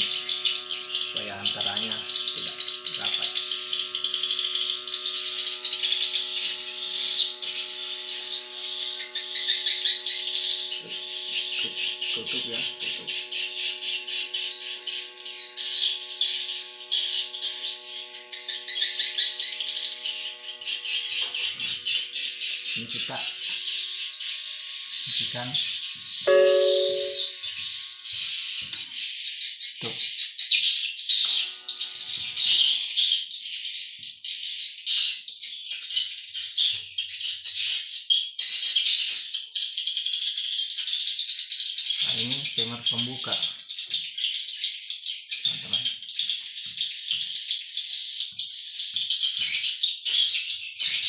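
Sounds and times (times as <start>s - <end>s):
swiftlets buzzing chatter: 0.0s - 28.4s.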